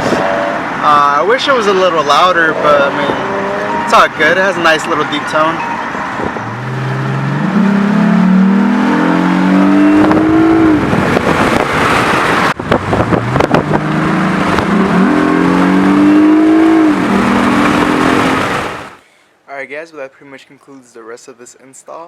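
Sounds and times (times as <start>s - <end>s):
car exhaust accelerating: 0.0s - 5.3s, 5.9s - 19.0s.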